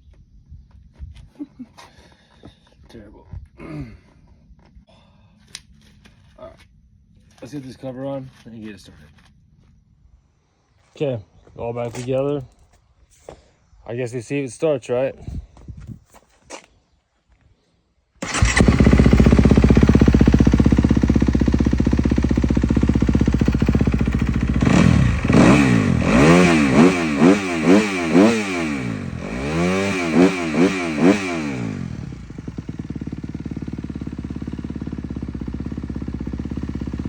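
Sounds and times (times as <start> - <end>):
engine idling: 18.2 - 37.0
motorcycle engine starting: 18.2 - 37.0
throttle revs: 18.2 - 37.0.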